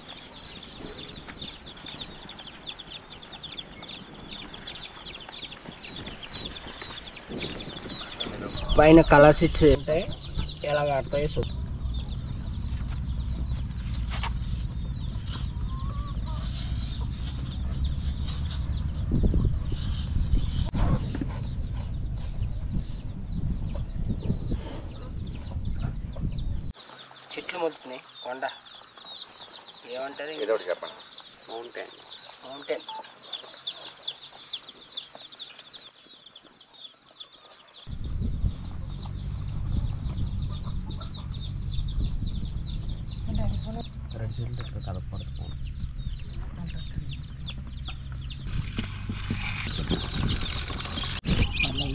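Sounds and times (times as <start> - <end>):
baby chickens peeping: 0.0 - 51.9
steady low rumble: 6.2 - 26.8, 37.9 - 51.9.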